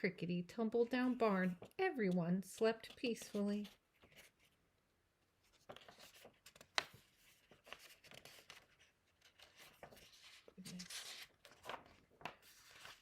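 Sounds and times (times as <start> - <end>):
book pages rustling: 1.1 - 4.6, 5.4 - 13.0.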